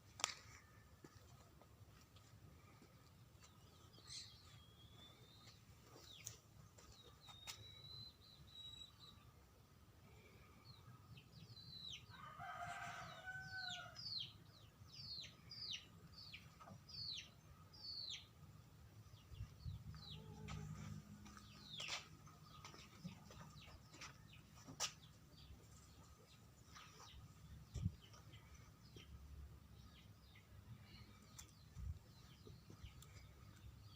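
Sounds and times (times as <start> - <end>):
baby chicks peeping: 10.6 - 18.3, 19.1 - 29.2.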